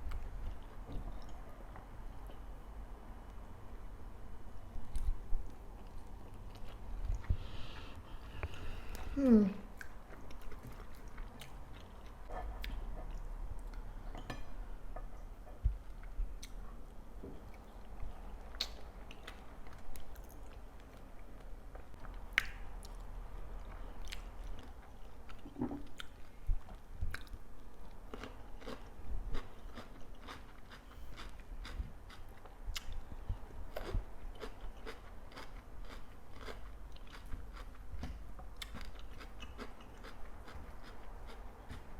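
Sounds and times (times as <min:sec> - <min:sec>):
chewing and biting food: 0:28.0 - 0:33.0, 0:33.7 - 0:41.9.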